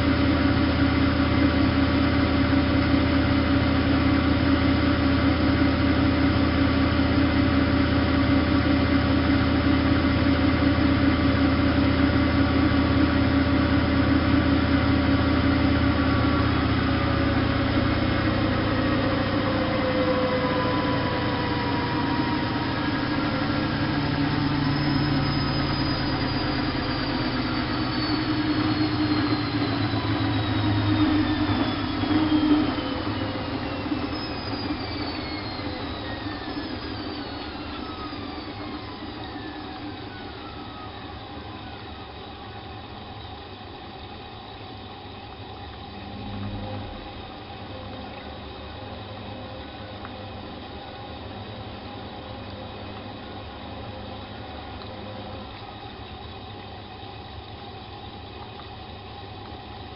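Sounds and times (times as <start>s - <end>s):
drum whine falling in pitch: 0.0s - 43.7s, 45.0s - 56.4s
washing machine hum: 0.0s - 59.9s.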